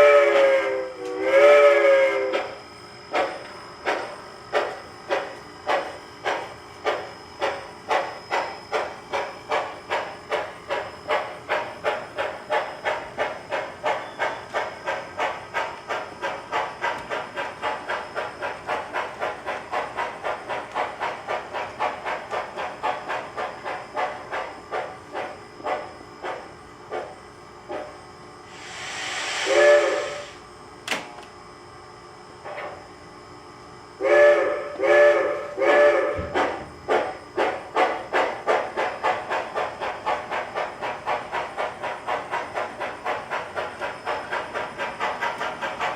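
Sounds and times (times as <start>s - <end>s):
locomotive whistle blast: 0.0s - 2.6s, 28.6s - 30.4s, 34.0s - 36.3s
model locomotive steam chuffs: 0.0s - 25.9s, 28.4s - 30.4s, 34.0s - 45.9s.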